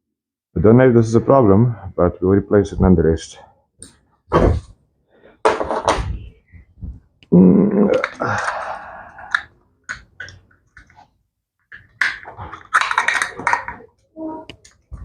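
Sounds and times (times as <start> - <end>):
tools and parts clicking: 11.7 - 13.9.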